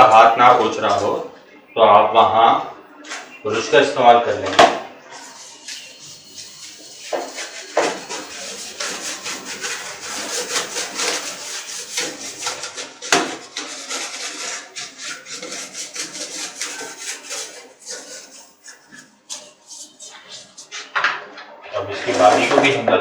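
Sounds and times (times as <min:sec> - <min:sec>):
brush scrubbing rapid rasping: 0:05.2 - 0:20.8.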